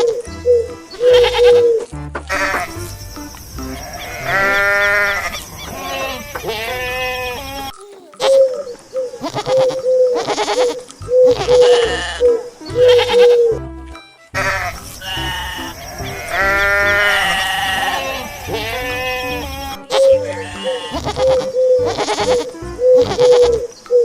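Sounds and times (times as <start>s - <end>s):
music playing: 0.0s - 5.0s, 11.0s - 23.7s
goats bleating: 1.0s - 8.6s, 9.2s - 13.6s, 14.2s - 23.6s.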